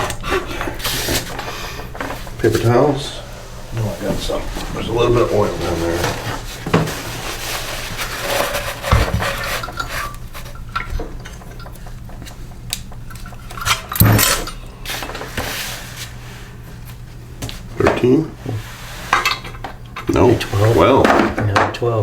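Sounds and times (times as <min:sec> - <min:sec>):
metal tools clinking on workbench: 0:13.2 - 0:14.6.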